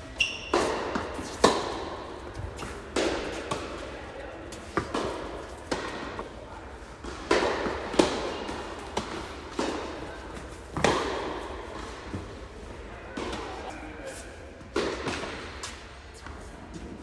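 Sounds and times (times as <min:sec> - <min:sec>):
rackets striking tennis ball: 0:00.1 - 0:12.5, 0:14.7 - 0:15.9
ball bouncing on court: 0:04.5 - 0:06.3.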